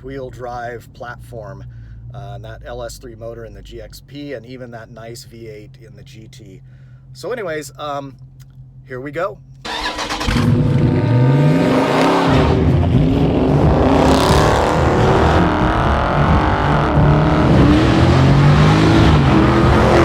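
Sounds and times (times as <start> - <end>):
car engine revving loudly: 9.7 - 20.0.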